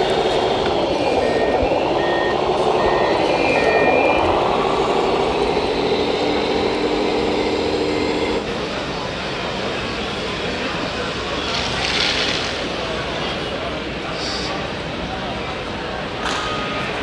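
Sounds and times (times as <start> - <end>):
reversing beeper: 0.0 - 8.4
motor whine: 0.0 - 8.5.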